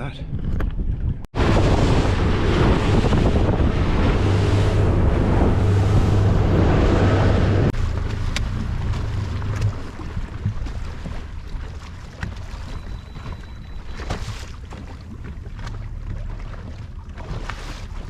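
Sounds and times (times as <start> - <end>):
wind buffeting microphone: 0.0 - 15.5
boat engine hum: 1.3 - 18.0
water wash: 1.3 - 18.0.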